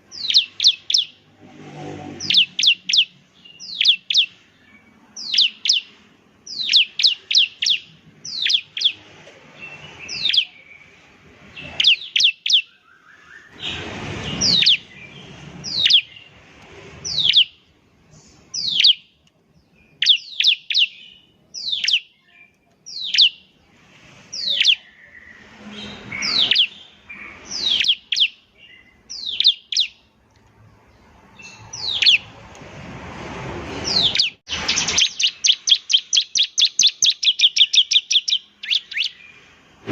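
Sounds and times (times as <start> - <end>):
bird calling high notes: 34.0 - 39.3.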